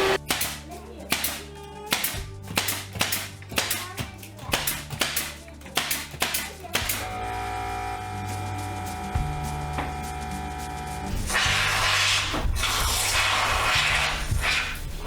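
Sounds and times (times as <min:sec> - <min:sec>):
low bass line: 0:00.0 - 0:00.7, 0:07.0 - 0:15.0
music with percussive beat: 0:00.0 - 0:15.0.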